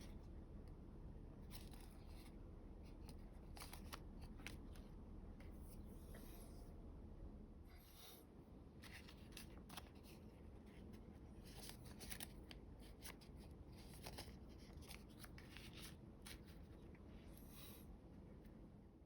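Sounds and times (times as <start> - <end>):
paper rustling and folding: 1.4 - 6.4, 8.8 - 17.5.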